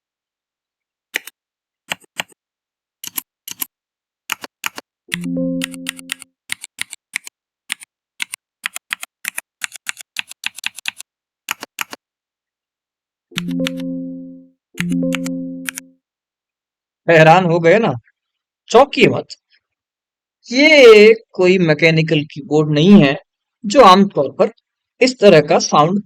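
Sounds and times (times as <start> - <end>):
mechanical keyboard keystroke clicks: 4.3 - 12.0, 14.8 - 15.8
short low chord-like tone: 13.4 - 15.8.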